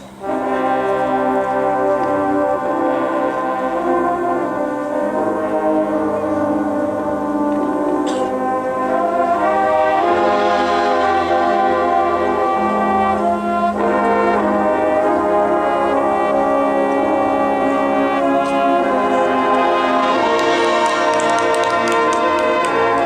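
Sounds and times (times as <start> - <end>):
brass section playing chords: 0.0 - 23.0
percussion strikes: 4.8 - 23.0.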